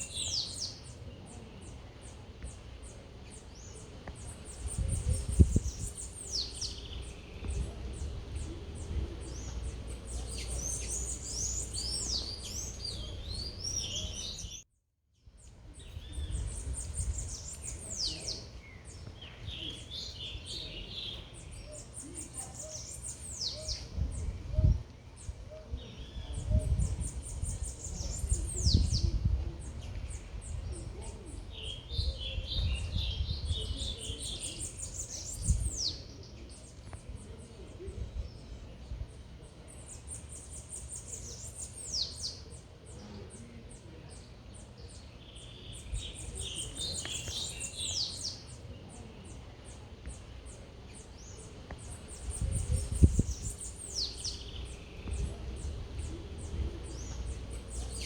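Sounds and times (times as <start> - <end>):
low rumble of city noise: 0.0 - 14.6, 15.3 - 58.0
songbirds singing: 0.0 - 58.0.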